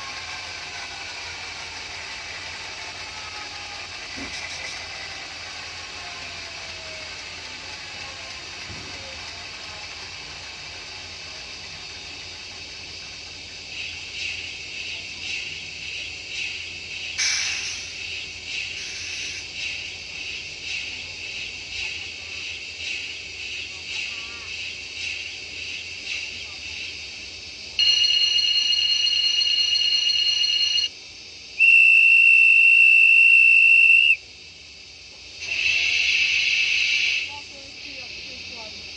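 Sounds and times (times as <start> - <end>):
steam hiss: 0.0 - 27.8, 31.2 - 38.9
slow locomotive chuffs: 0.0 - 38.9
steam locomotive whistle: 31.6 - 34.2, 35.4 - 37.4.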